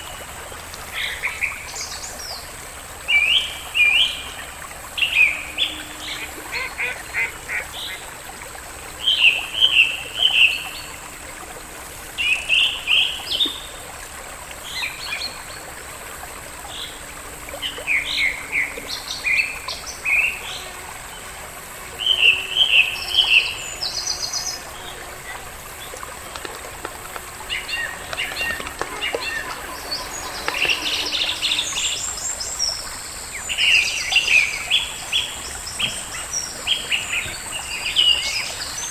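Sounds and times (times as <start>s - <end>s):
birds chirping: 22.0s - 38.9s.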